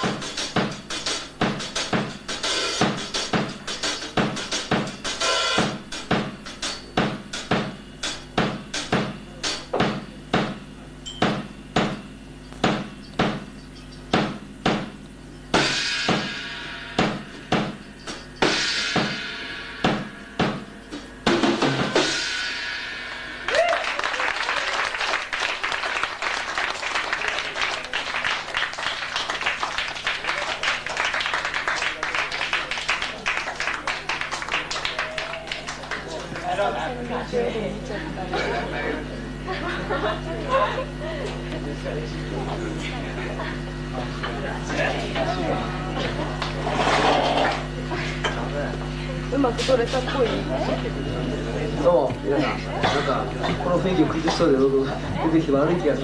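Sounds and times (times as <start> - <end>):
bass drum and snare strikes: 0.0 - 22.7
cymbal crashes: 15.5 - 23.7
audience applause: 23.4 - 37.3, 44.2 - 47.7.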